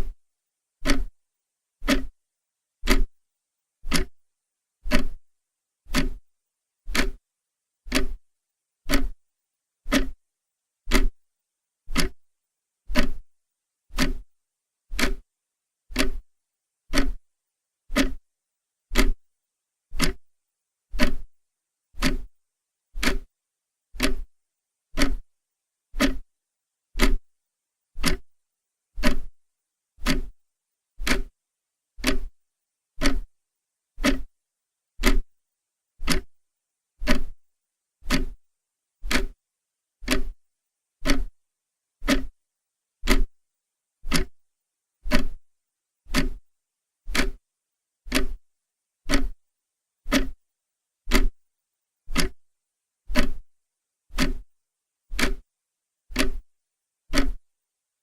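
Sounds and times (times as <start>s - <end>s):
clock ticking: 0.8s - 1.2s, 1.8s - 2.1s, 2.8s - 3.1s, 3.8s - 4.2s, 4.9s - 5.2s, 5.9s - 6.2s, 6.9s - 7.2s, 7.9s - 8.2s, 8.9s - 9.2s, 9.9s - 10.2s, 10.9s - 11.2s, 11.9s - 12.2s, 12.9s - 13.2s, 13.9s - 14.2s, 14.9s - 15.2s, 15.9s - 16.2s, 16.9s - 17.2s, 17.9s - 18.2s, 18.9s - 19.2s, 20.0s - 20.3s, 21.0s - 21.3s, 22.0s - 22.3s, 23.0s - 23.3s, 24.0s - 24.3s, 25.0s - 25.3s, 26.0s - 26.2s, 27.0s - 27.2s, 28.0s - 28.3s, 29.0s - 29.3s, 30.0s - 30.3s, 31.0s - 31.3s, 32.0s - 32.4s, 33.0s - 33.3s, 34.0s - 34.3s, 35.0s - 35.3s, 36.0s - 36.4s, 37.0s - 37.4s, 38.0s - 38.4s, 39.0s - 39.4s, 40.0s - 40.4s, 41.0s - 41.4s, 42.0s - 42.3s, 43.0s - 43.3s, 44.1s - 44.4s, 45.1s - 45.4s, 46.1s - 46.4s, 47.1s - 47.4s, 48.1s - 48.4s, 49.1s - 49.4s, 50.1s - 50.4s, 51.1s - 51.4s, 52.1s - 52.4s, 53.1s - 53.4s, 54.1s - 54.5s, 55.1s - 55.4s, 56.1s - 56.5s, 57.1s - 57.4s.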